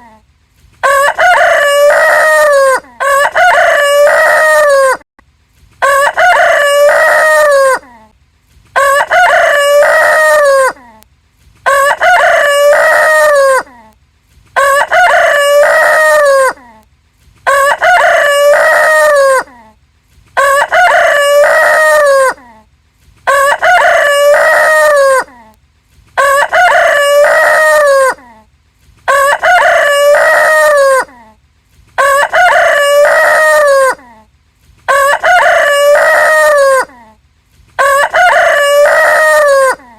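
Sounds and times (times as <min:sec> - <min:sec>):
rooster crowing: 0:00.8 - 0:05.0, 0:05.8 - 0:07.9, 0:08.8 - 0:10.8, 0:11.7 - 0:13.7, 0:14.6 - 0:16.6, 0:17.5 - 0:19.5, 0:20.4 - 0:22.4, 0:23.3 - 0:25.3, 0:26.2 - 0:28.2, 0:29.1 - 0:31.1, 0:32.0 - 0:34.0, 0:34.9 - 0:36.9, 0:37.8 - 0:39.9.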